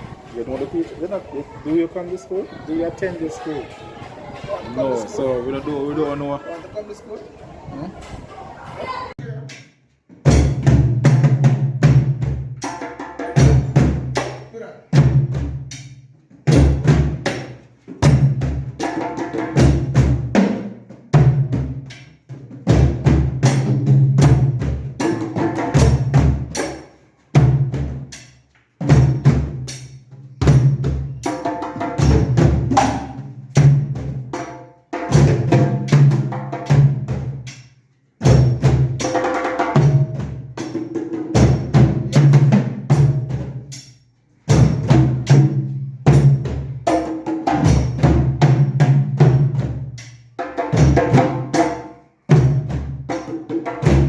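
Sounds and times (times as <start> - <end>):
music with drum beat and bass: 9.4 - 43.9.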